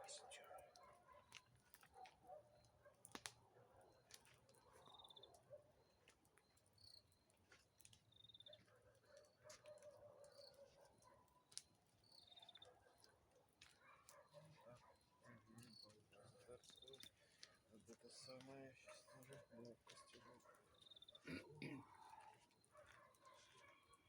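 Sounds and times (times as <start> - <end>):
campfire crackling: 0.0 - 5.2, 5.9 - 8.4, 15.0 - 24.0.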